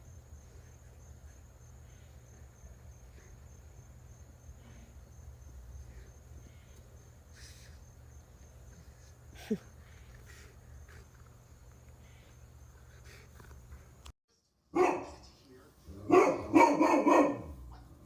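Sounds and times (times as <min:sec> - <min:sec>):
crickets trilling: 0:00.0 - 0:14.1.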